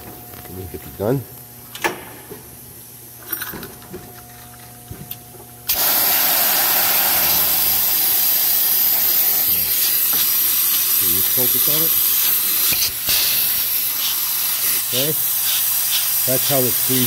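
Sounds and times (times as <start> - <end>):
air-powered rivet gun hissing: 5.7 - 17.0.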